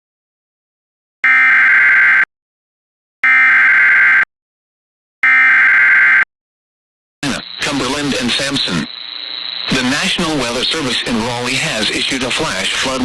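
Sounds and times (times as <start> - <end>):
buzzing modem-like data tones: 1.2 - 2.3, 3.2 - 4.3, 5.2 - 6.3, 7.2 - 13.0.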